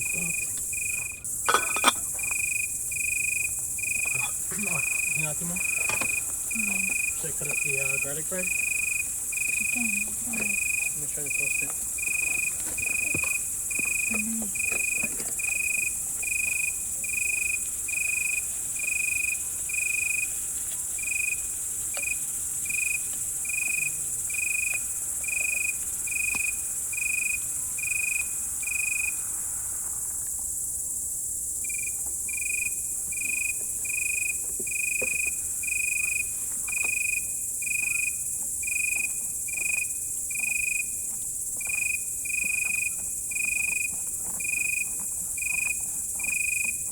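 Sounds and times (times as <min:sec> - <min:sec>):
cricket chirping: 0:00.0 - 0:46.9
high insect hiss: 0:00.0 - 0:46.9
faint clicks: 0:20.6 - 0:26.6.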